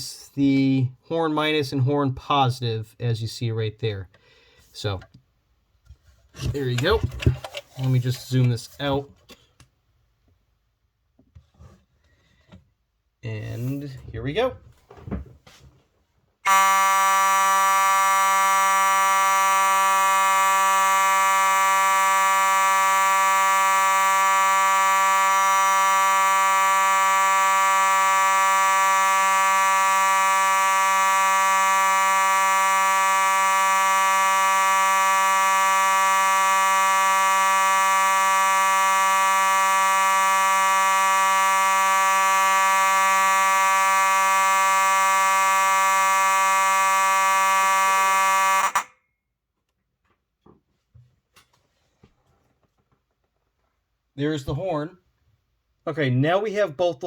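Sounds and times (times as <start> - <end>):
fire alarm horn buzzing: 16.4 - 48.9.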